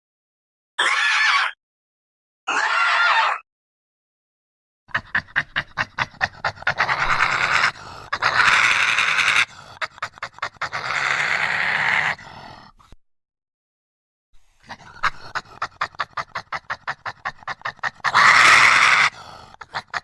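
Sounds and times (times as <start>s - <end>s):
breathy panting puffs: 4.9s - 8.4s, 9.4s - 10.7s, 14.6s - 20.0s
hissing breaths: 5.3s - 8.3s, 12.0s - 13.0s, 18.9s - 19.8s.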